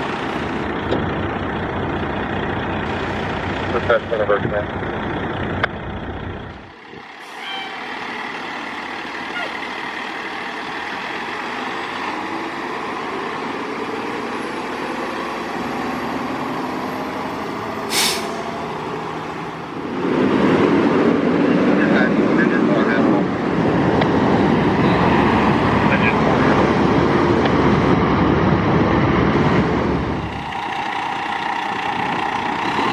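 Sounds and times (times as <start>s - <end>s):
fire truck engine running: 0.0s - 32.9s
air brake hiss: 17.9s - 18.5s.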